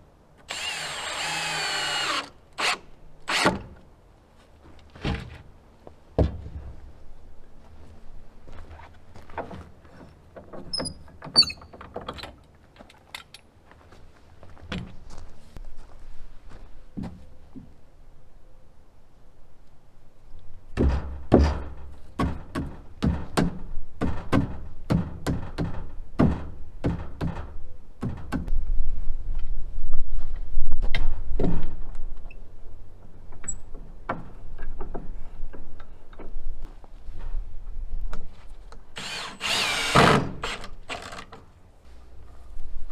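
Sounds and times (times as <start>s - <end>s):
brief high squeaks: 10.7s - 11.7s.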